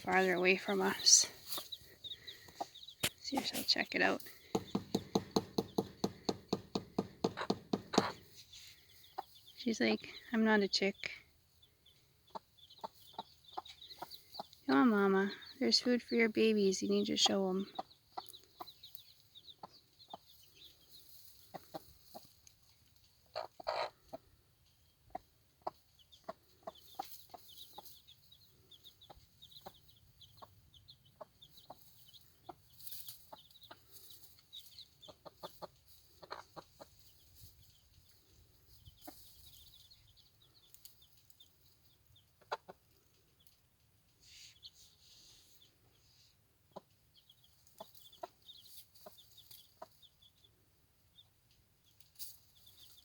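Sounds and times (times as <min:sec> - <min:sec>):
chicks peeping: 0:00.0 - 0:53.0
hen softly clucking: 0:11.8 - 0:14.6, 0:17.2 - 0:37.3, 0:42.2 - 0:43.1.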